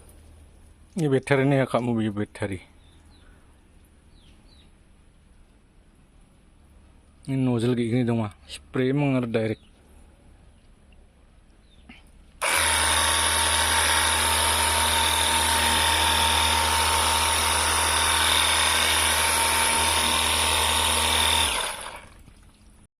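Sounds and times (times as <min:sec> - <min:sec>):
pressure washer running: 0:12.4 - 0:22.3.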